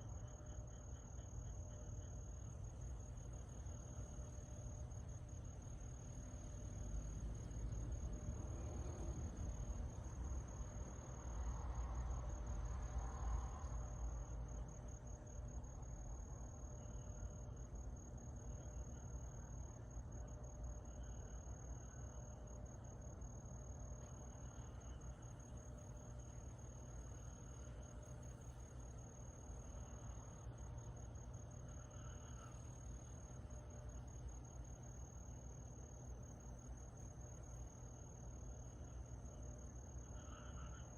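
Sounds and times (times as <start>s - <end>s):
insect high steady trill: 0.0s - 40.9s.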